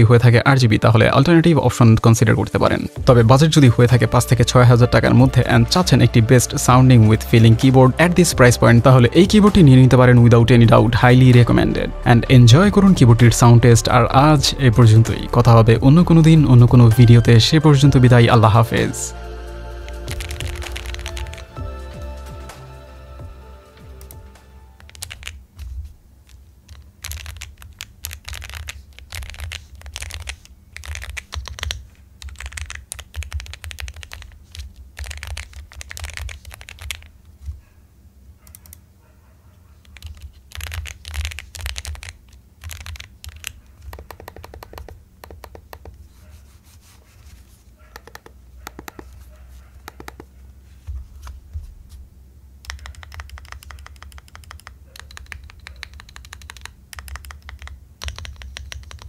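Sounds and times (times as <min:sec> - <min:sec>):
mechanical keyboard typing: 0:19.8 - 0:21.6, 0:24.0 - 0:37.2, 0:39.8 - 0:46.0, 0:48.0 - 0:49.1, 0:49.8 - 0:50.3, 0:52.6 - 0:59.0.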